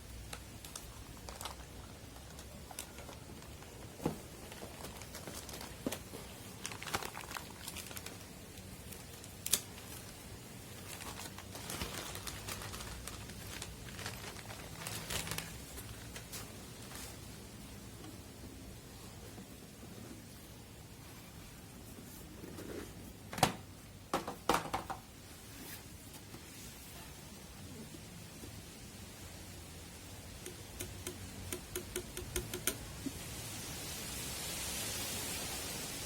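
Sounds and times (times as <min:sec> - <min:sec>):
packaging crinkling: 0:00.1 - 0:17.2
sharp clicks and taps: 0:30.4 - 0:32.8.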